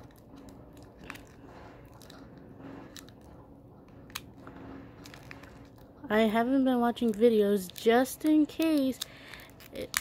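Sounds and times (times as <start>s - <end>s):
room fan humming: 0.0s - 10.0s
plastic packaging rustling and clicking: 6.8s - 10.0s.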